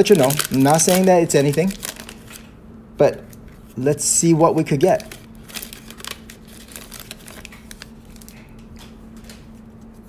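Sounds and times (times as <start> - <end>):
card pack crinkling: 0.0 - 2.5, 4.7 - 9.4
faint hum: 0.0 - 10.0.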